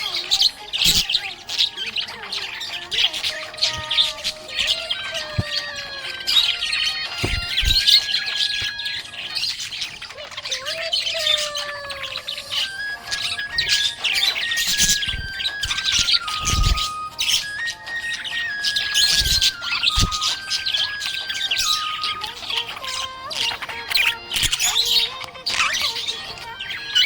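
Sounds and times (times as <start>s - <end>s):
budgerigars chirping and warbling: 0.0s - 27.0s.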